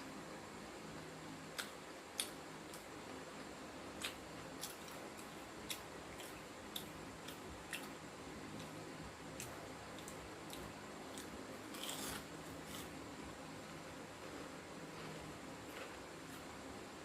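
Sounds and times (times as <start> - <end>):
crunching of fried fish chewed: 9.4 - 12.9.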